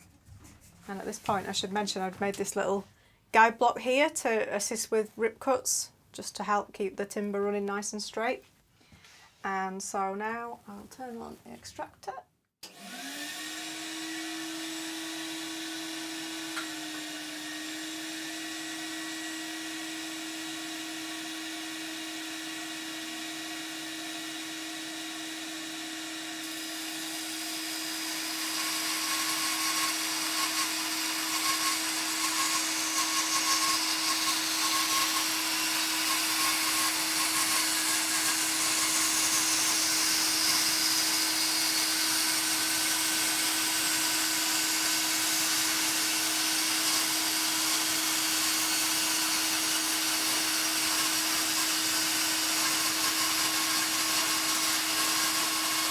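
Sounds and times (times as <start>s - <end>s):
bandsaw running: 12.6s - 55.9s
dust extractor motor whining: 12.6s - 55.9s.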